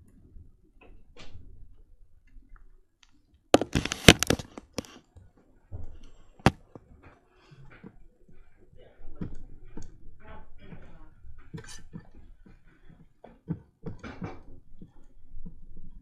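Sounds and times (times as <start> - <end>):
slime popping and crackling: 3.6 - 4.9.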